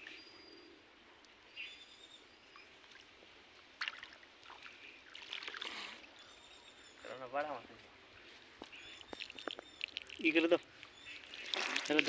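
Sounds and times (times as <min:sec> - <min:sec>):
bird chirps: 0:01.5 - 0:02.8, 0:08.6 - 0:11.6
pond water splashing: 0:02.8 - 0:06.2, 0:08.9 - 0:12.0.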